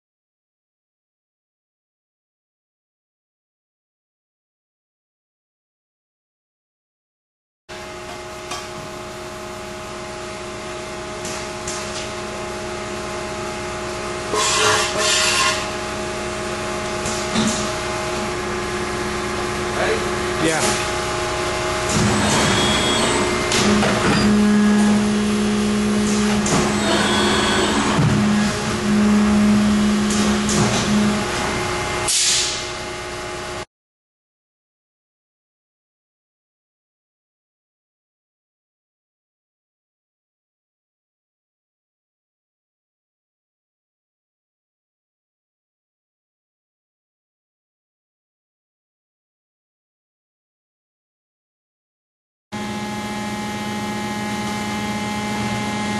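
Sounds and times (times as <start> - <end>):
machine hum with held tones: 7.8 - 33.7, 52.6 - 55.9
air hissing: 32.1 - 32.7.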